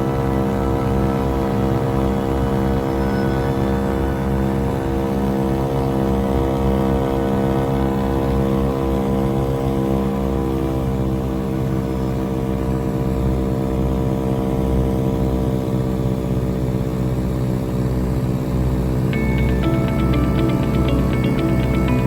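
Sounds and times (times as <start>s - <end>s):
music: 0.0s - 6.8s, 19.1s - 22.0s
aircraft propeller engines droning: 0.0s - 22.0s.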